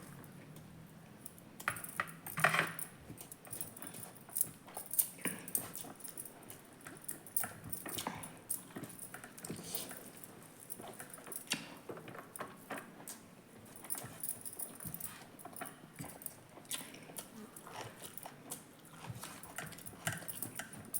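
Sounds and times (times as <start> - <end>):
person chewing food: 16.0 - 20.8.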